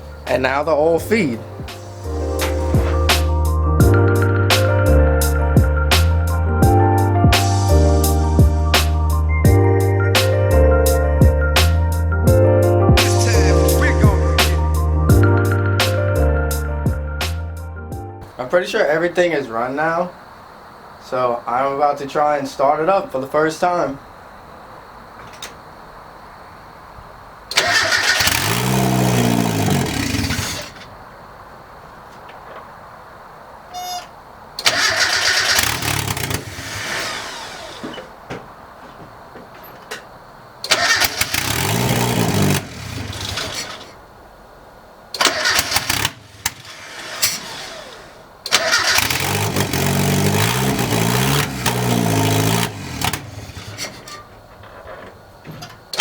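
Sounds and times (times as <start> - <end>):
car engine cranking by starter: 0.0 - 4.8, 27.5 - 31.0, 34.6 - 38.2, 40.6 - 44.1, 45.1 - 56.0.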